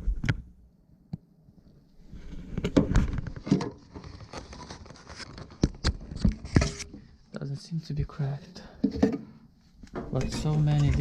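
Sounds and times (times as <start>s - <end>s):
knocks and rattling rustle: 2.6s - 7.0s.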